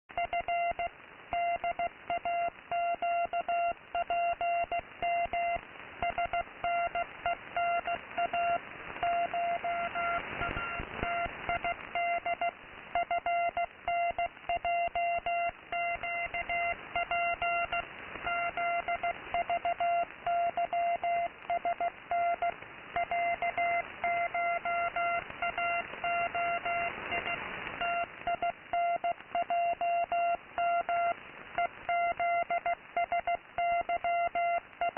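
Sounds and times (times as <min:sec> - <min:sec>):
radio static hiss: 0:00.1 - 0:34.9
morse code tone: 0:07.6 - 0:31.1.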